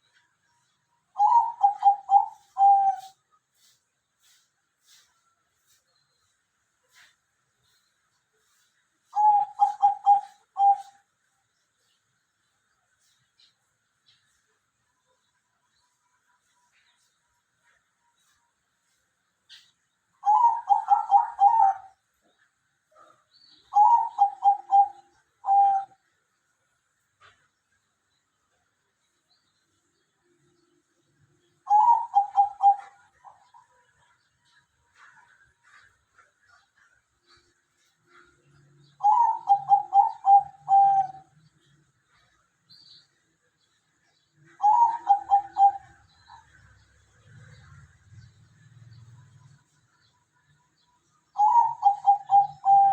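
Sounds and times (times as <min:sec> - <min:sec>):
dove cooing: 0:01.2 - 0:03.7, 0:09.1 - 0:11.0, 0:19.5 - 0:22.0, 0:23.0 - 0:26.0, 0:31.6 - 0:41.4, 0:44.4 - 0:46.7, 0:51.3 - 0:52.9.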